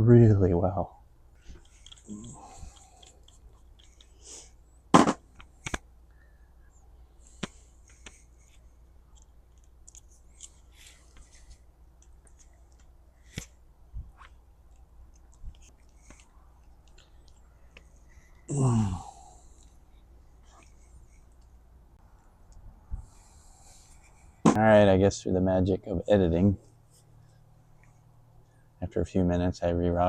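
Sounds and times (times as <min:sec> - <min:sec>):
tools scratching on wires: 0:01.4 - 0:04.2, 0:07.8 - 0:13.5.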